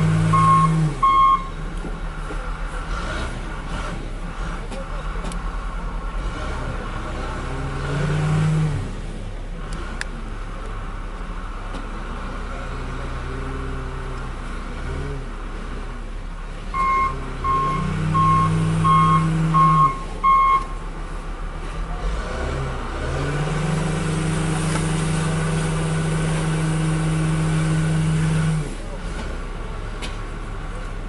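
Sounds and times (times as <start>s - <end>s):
diesel engine running: 0.0s - 31.0s
backup alarm beeping: 0.3s - 1.6s, 16.8s - 20.8s.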